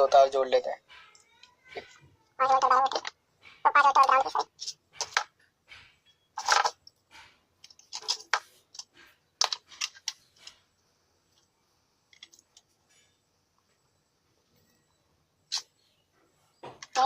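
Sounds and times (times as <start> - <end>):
clicks and scrapes of small parts: 0.9 - 13.3.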